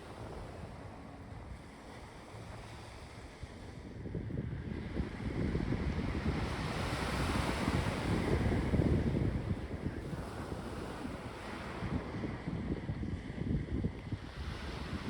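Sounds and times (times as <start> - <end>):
wind buffeting microphone: 0.0 - 15.0
sea waves breaking: 5.2 - 12.5.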